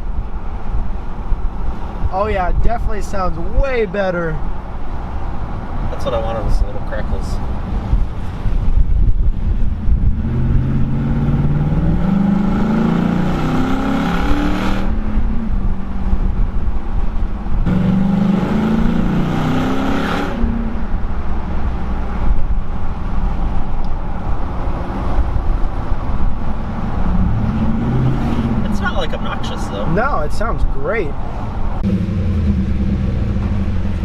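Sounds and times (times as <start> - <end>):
car engine revving: 9.7 - 15.6, 17.6 - 21.0, 25.9 - 30.1, 31.2 - 34.0
car engine idling: 28.2 - 34.0.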